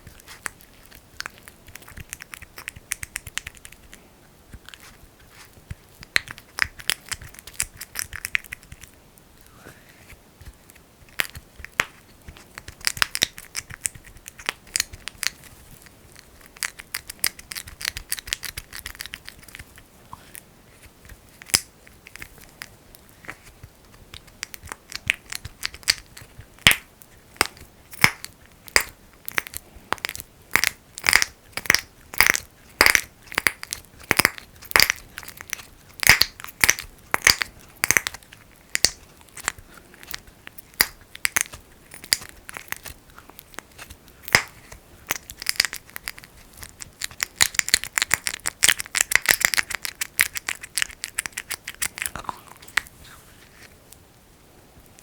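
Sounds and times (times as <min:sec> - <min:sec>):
sticky clicks of petroleum jelly: 0:10.4 - 0:19.8, 0:21.0 - 0:52.9.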